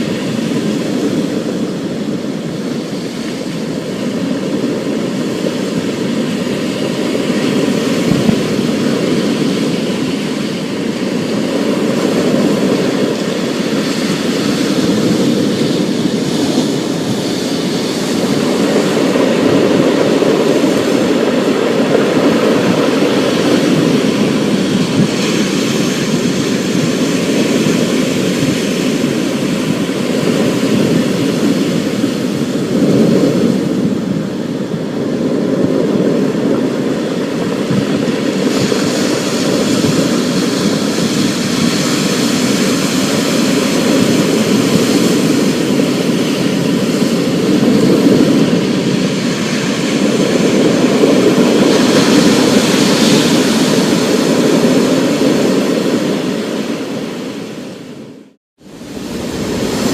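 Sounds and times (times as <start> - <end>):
thunder rumbling roar: 58.6 - 59.9.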